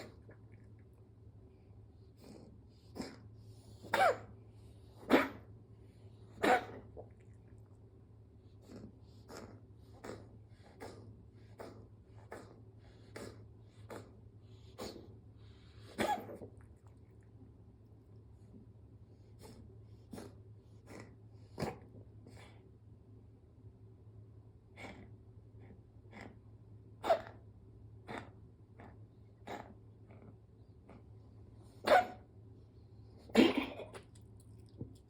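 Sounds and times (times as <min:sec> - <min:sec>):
person coughing: 0:33.3 - 0:34.0.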